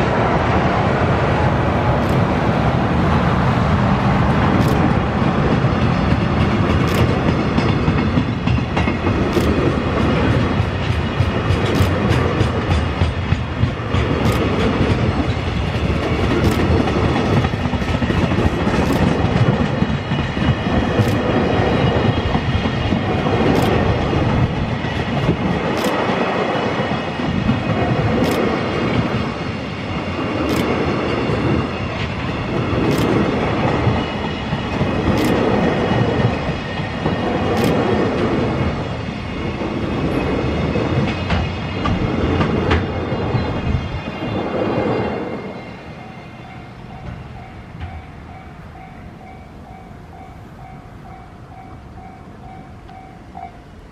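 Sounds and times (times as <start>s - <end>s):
train wagon wheels rumbling: 0.0s - 53.9s
sharp click: 14.2s - 14.6s.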